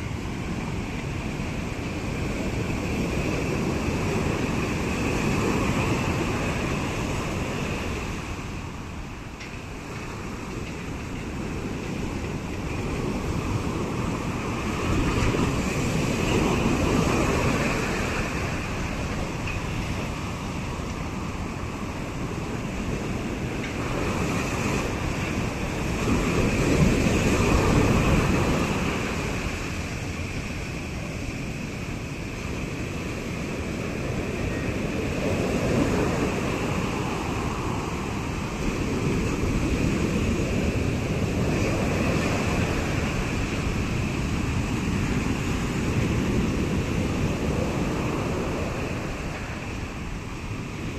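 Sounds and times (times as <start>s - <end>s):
ocean surf breaking on beach: 0.0s - 50.9s.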